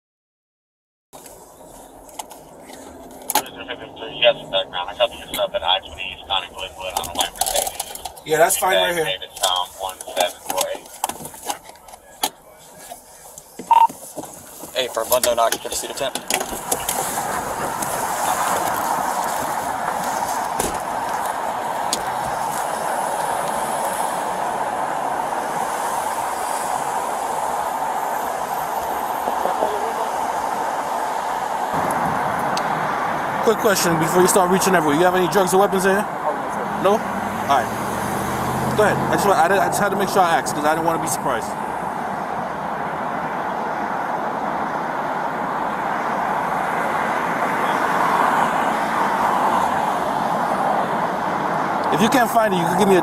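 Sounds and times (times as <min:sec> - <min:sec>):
highway traffic roar: 0:01.2 - 0:53.0
vehicle passing by: 0:16.6 - 0:53.0.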